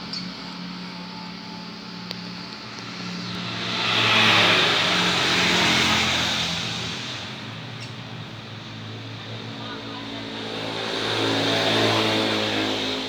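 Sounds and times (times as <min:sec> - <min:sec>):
vehicle passing by: 0:02.8 - 0:07.6, 0:09.2 - 0:13.0.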